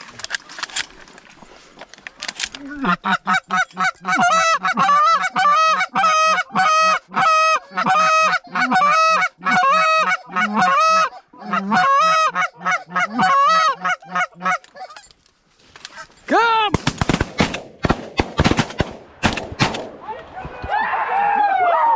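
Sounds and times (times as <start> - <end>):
goose call honking and clucking: 2.8 - 15.0.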